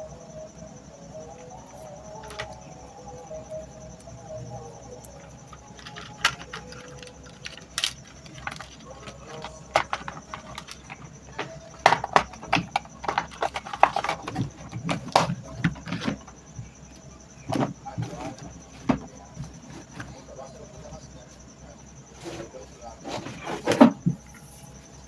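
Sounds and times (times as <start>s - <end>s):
hands clicking on plastic fan parts: 1.4s - 16.7s.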